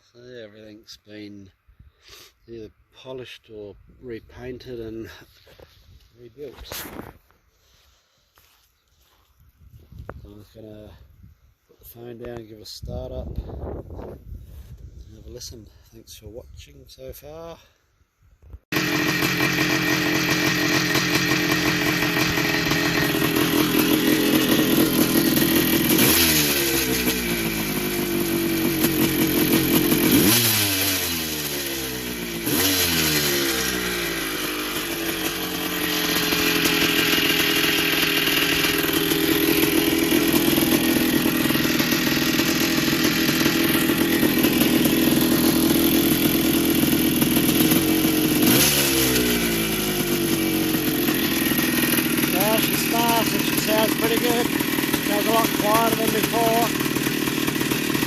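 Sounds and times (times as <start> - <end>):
two-stroke engine revving: 18.7 - 58.0.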